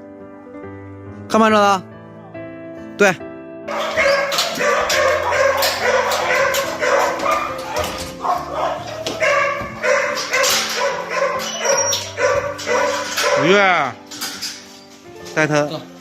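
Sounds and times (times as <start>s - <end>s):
background music of held notes: 0.0s - 16.0s
dogs barking: 3.7s - 14.8s.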